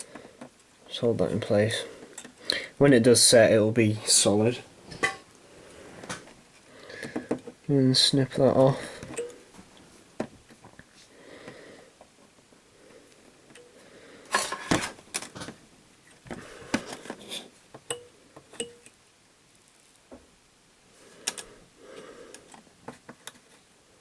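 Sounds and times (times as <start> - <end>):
metal hand tools clinking: 17.9 - 18.9.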